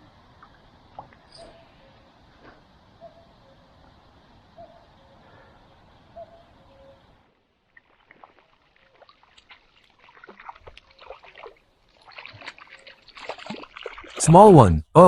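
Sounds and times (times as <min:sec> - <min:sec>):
water splashing and dripping: 0:07.7 - 0:14.2.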